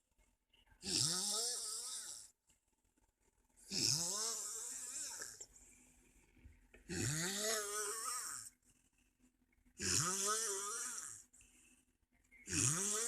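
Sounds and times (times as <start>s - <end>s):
man snoring: 0.8s - 2.3s, 3.7s - 5.4s, 6.9s - 8.5s, 9.8s - 11.3s, 12.5s - 13.0s.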